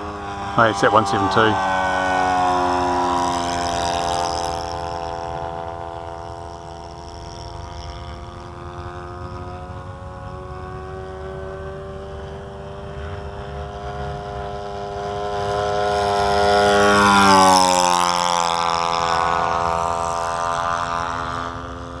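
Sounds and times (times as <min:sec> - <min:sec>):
model airplane engine passing: 0:00.0 - 0:22.0.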